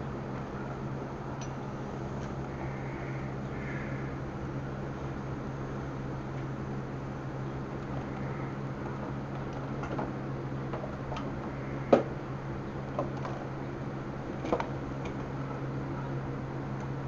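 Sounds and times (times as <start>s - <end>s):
steady low hum: 0.0s - 17.0s.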